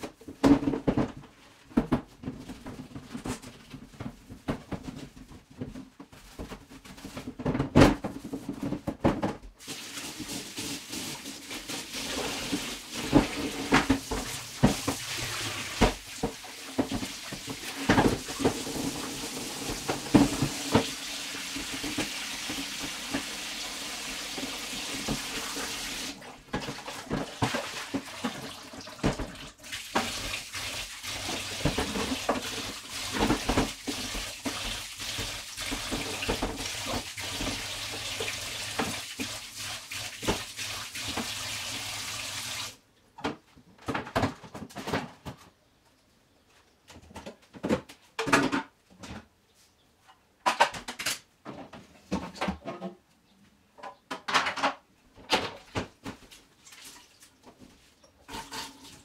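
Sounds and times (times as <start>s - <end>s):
things clattering in sink: 0.0s - 23.4s, 24.3s - 41.6s, 43.2s - 45.6s, 46.9s - 49.3s, 50.4s - 53.0s, 53.8s - 59.0s
tap water running into sink: 9.6s - 42.8s.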